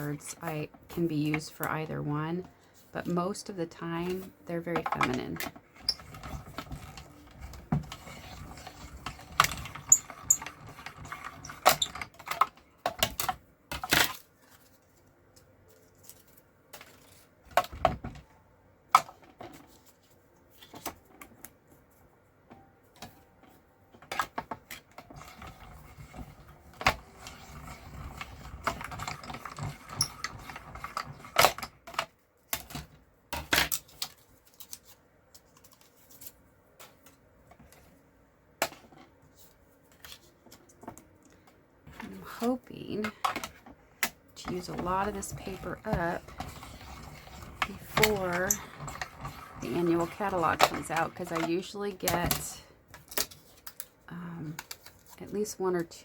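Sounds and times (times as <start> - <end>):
cardstock and tools handled: 0.0 - 18.3, 19.0 - 22.1, 22.9 - 38.0, 38.6 - 56.0
soft paper rustling: 14.1 - 17.4, 19.5 - 22.1, 33.8 - 38.0, 39.2 - 43.2, 44.8 - 56.0.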